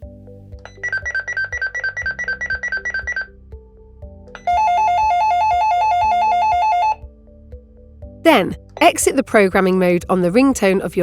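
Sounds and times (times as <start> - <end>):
two-tone warble ringtone: 0.7 - 3.4, 4.3 - 7.0.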